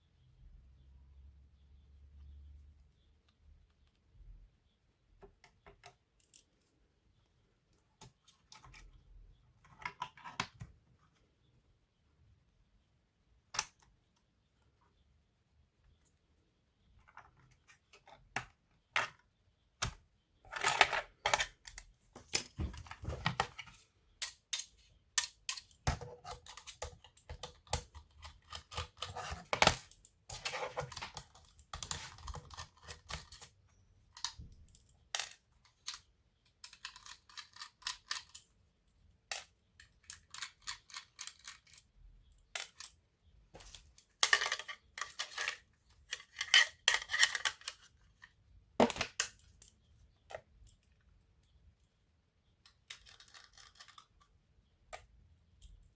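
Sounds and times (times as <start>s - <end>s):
plastic and metal parts clicking: 19.8s - 33.5s, 34.1s - 38.5s, 39.3s - 41.9s, 43.6s - 51.0s, 52.6s - 54.3s.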